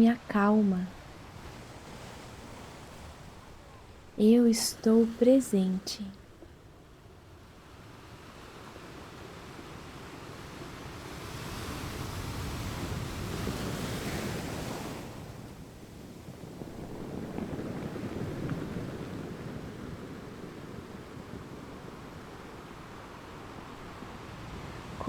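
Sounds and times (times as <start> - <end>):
ocean waves surging: 0.0 - 25.0.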